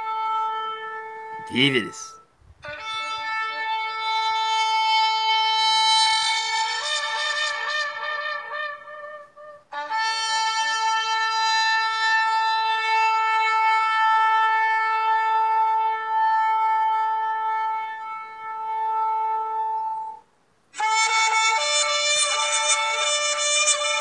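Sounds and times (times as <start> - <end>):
shofar blast: 0.0 - 24.0.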